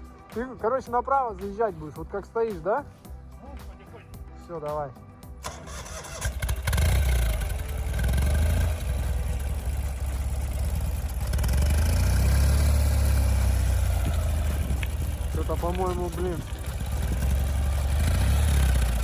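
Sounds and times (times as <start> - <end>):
motorcycle engine pulling hard: 5.4 - 19.0
faint clicks: 13.9 - 16.7.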